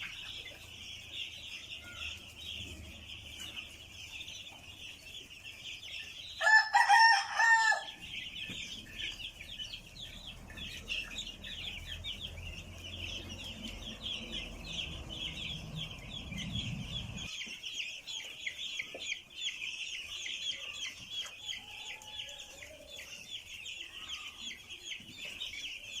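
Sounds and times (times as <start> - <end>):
chicks peeping: 0.0 - 26.0
adult chicken call: 6.4 - 8.0
low hum: 10.4 - 17.3.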